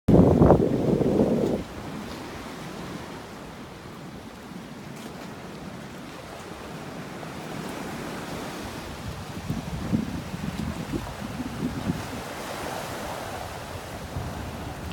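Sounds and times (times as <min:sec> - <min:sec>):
wind rumbling on microphone: 0:00.1 - 0:05.0, 0:07.9 - 0:14.9
sea waves washing in: 0:00.1 - 0:14.9.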